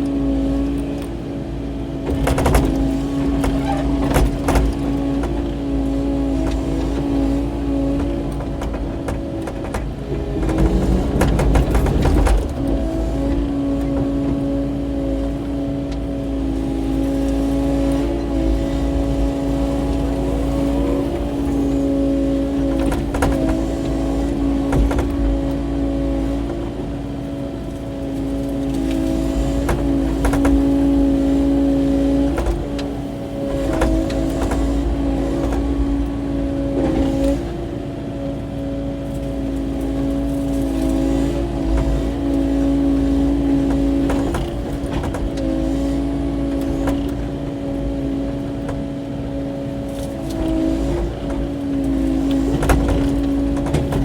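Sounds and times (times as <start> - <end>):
excavator engine and hydraulics: 0.0 - 54.0
knocks and cracks of brush clearing: 0.0 - 54.0.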